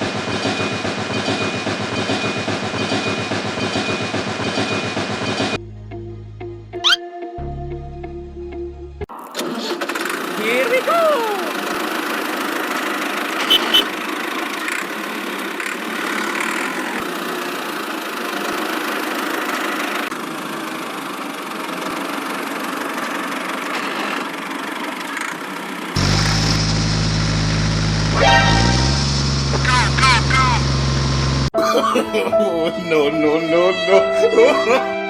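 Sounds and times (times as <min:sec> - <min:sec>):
small motor running: 0:26.0 - 0:31.5.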